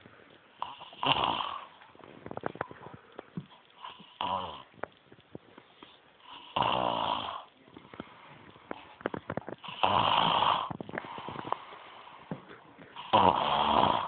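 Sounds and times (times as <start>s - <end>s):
woman snoring: 0.6s - 1.7s, 3.8s - 4.7s, 6.2s - 7.5s, 9.6s - 11.6s, 13.0s - 14.0s.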